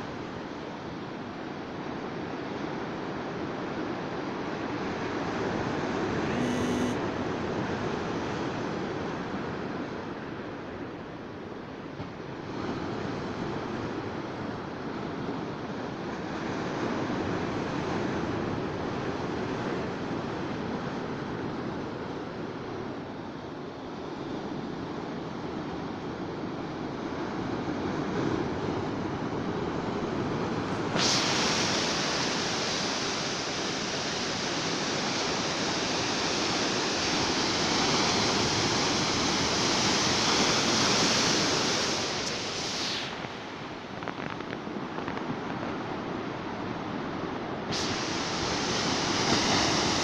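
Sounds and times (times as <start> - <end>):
sea waves breaking on shore: 26.2 - 50.0.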